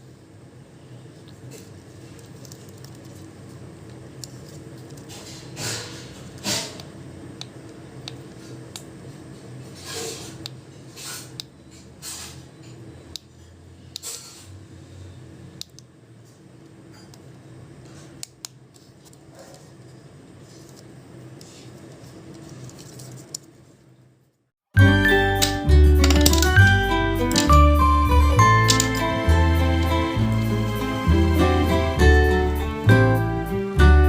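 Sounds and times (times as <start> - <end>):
objects scraping and rustling: 4.3 - 6.8, 9.6 - 12.8, 18.8 - 23.7.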